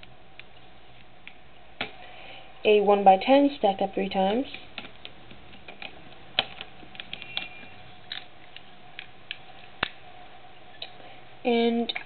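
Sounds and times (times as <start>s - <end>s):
faint steady hum: 0.0s - 12.0s
sharp plastic snaps: 4.5s - 10.0s.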